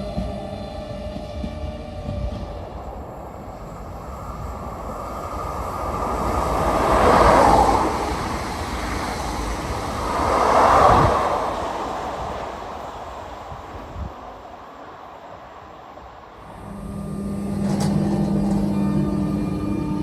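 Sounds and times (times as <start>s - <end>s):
train wheels passing: 0.0s - 20.0s.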